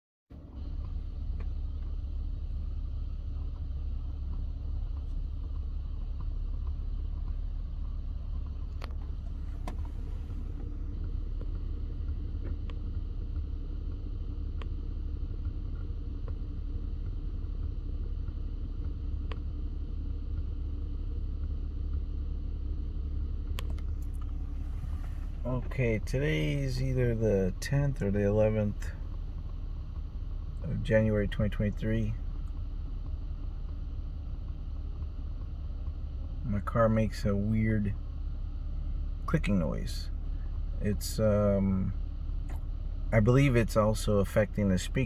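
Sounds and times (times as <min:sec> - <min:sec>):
car cabin rumble: 0:00.4 - 0:45.0
dashboard clicks: 0:08.7 - 0:11.6, 0:23.6 - 0:30.1.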